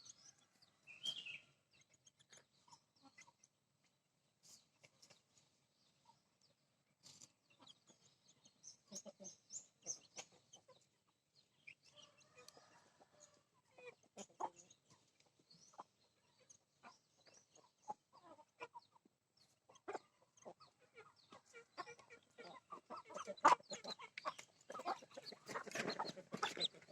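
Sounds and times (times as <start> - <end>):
chickens clucking: 0.0 - 26.9.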